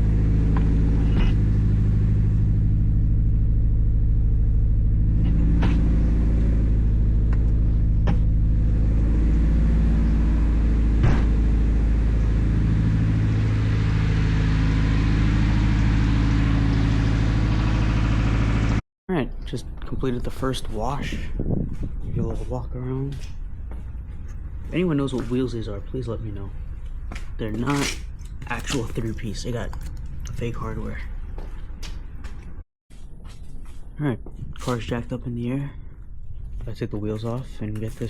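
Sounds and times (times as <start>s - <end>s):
car engine rumbling: 0.0s - 18.8s.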